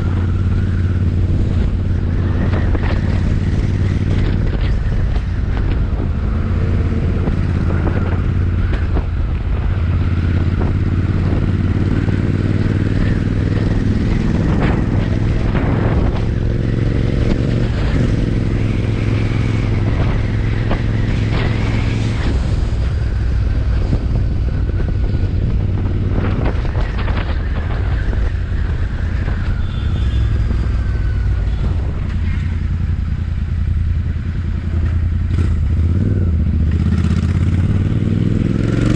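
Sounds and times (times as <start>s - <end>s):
motorcycle exhaust rumbling: 0.0s - 38.9s.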